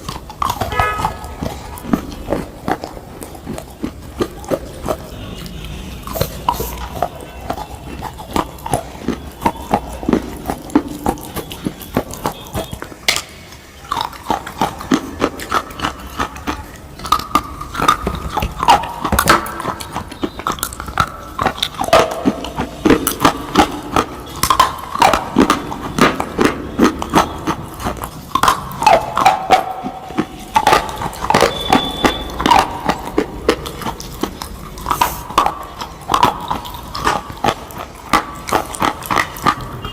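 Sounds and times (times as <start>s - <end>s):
crunching bites: 0.0s - 39.9s
swallowing: 0.0s - 39.9s.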